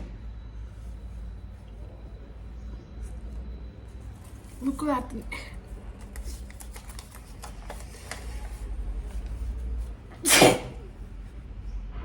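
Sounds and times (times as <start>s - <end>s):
person sneezing: 10.2s - 10.9s.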